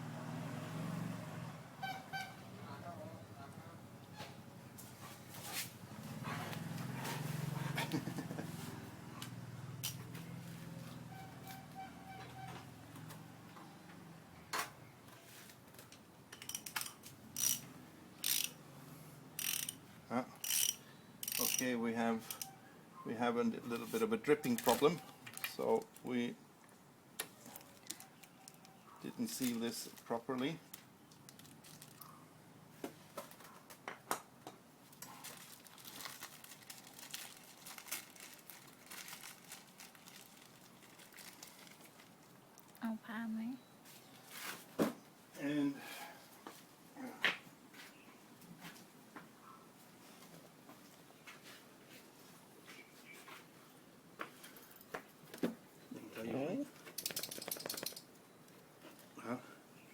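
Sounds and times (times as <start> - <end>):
faint background noise: 0.0 - 59.9
hand tool ratcheting: 16.3 - 18.6, 19.4 - 19.8, 20.4 - 22.5, 56.9 - 58.1
plastic bag crinkling: 31.1 - 32.1, 35.0 - 42.8.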